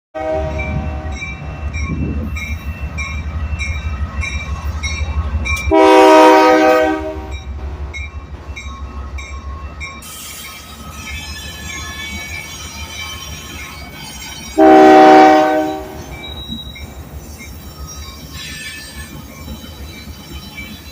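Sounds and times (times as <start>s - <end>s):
locomotive air horn blast: 0.2s - 1.2s, 5.7s - 7.3s, 14.6s - 16.1s
diesel locomotive engine rumble: 0.2s - 20.9s
locomotive bell ringing: 0.2s - 20.9s.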